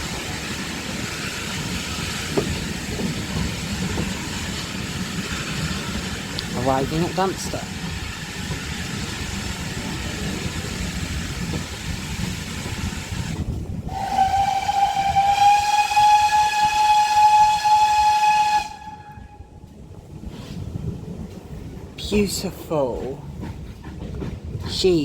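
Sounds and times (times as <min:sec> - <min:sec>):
steam train running: 0:00.0 - 0:25.0
steam locomotive whistle: 0:13.9 - 0:19.5.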